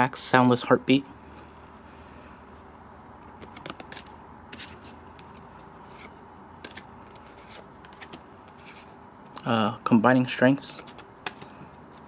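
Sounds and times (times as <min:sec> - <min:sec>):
cards clicking and swishing: 0:03.2 - 0:08.9, 0:10.7 - 0:12.0.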